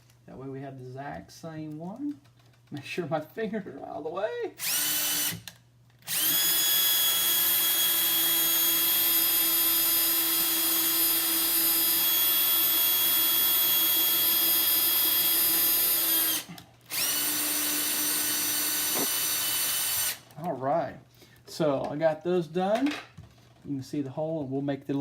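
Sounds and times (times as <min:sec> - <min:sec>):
electric drill boring into wood: 0:04.6 - 0:20.3.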